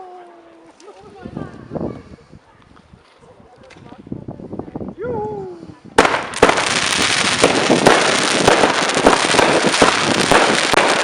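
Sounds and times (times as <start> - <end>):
fireworks crackling: 6.0 - 11.0.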